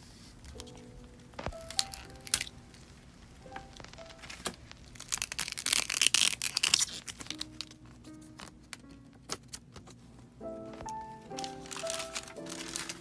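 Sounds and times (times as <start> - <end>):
plastic film crackling: 0.3 - 13.0.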